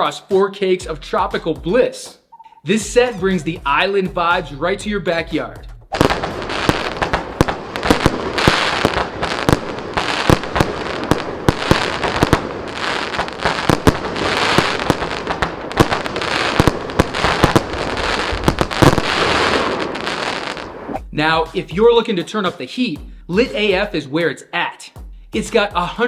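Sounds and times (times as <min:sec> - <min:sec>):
fireworks shots: 0:05.9 - 0:21.0.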